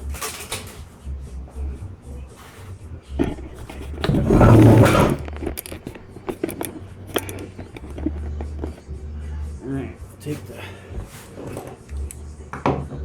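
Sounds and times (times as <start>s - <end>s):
metal scrape: 3.2s - 8.8s
tools clicking and tapping: 3.2s - 8.8s.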